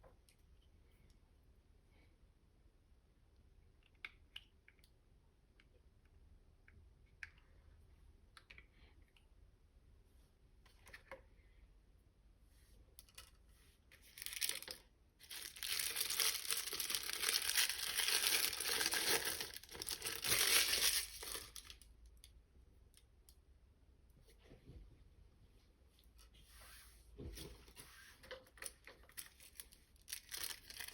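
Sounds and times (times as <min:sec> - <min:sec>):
plastic packaging tearing: 0:14.1 - 0:21.8, 0:29.0 - 0:30.9.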